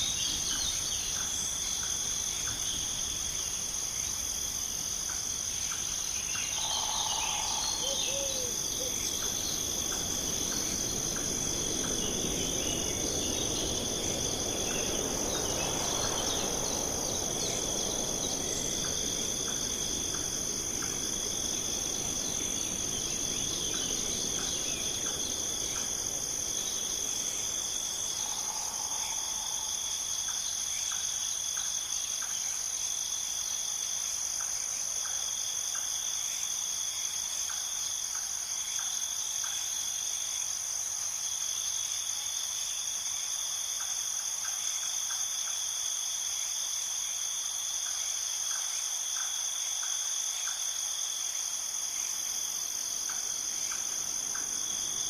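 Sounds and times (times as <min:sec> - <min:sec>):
crickets and insects trilling: 0:00.0 - 0:55.0
soft rush of noise: 0:05.4 - 0:30.8
bird calling: 0:06.6 - 0:09.4.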